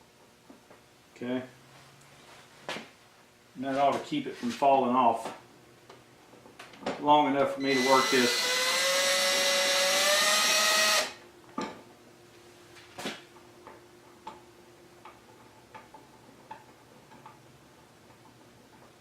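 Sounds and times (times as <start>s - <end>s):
power drill driving screw: 7.7s - 11.2s.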